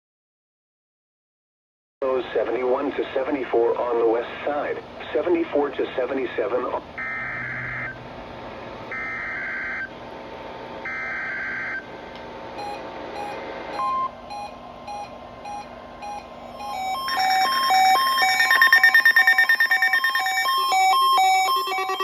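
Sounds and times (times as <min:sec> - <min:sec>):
short electronic beeps: 0:12.6 - 0:22.0
warbling digital data tones: 0:13.8 - 0:22.0.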